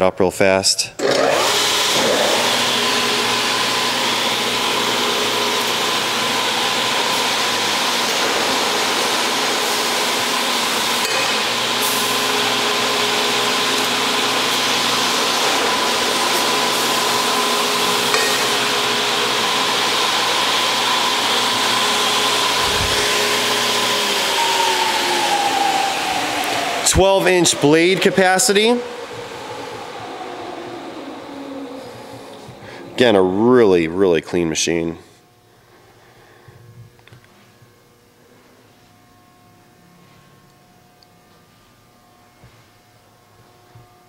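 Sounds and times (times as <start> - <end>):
electric saw motors humming: 1.0 - 34.2.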